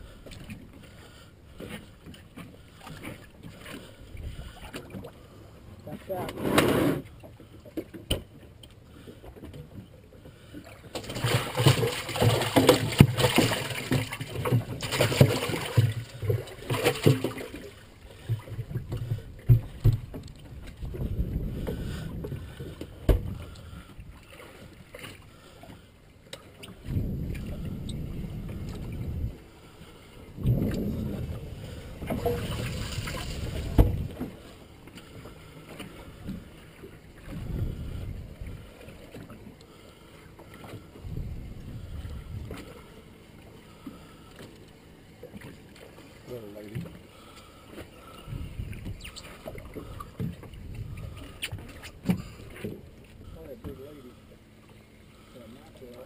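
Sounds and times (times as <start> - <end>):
wind gusting on microphone: 20.8 - 22.6, 26.8 - 29.4, 30.3 - 34.2, 37.3 - 38.6, 41.0 - 42.6.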